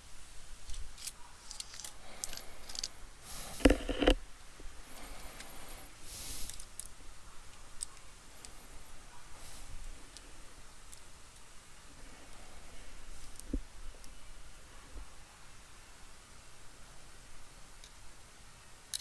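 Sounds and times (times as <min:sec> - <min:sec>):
small clicks of tools: 0:00.7 - 0:04.2, 0:17.8 - 0:18.0
rustling: 0:01.0 - 0:04.2.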